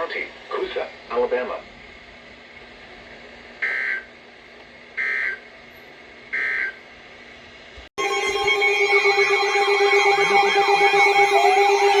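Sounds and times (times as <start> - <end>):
loud electronic alert tone: 3.6 - 4.1, 8.0 - 12.0
siren-like warble: 8.0 - 12.0.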